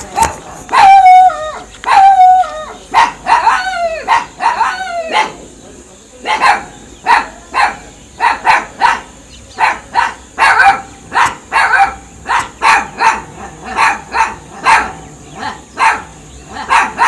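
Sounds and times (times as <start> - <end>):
dogs barking: 0.0 - 5.5, 6.2 - 17.0.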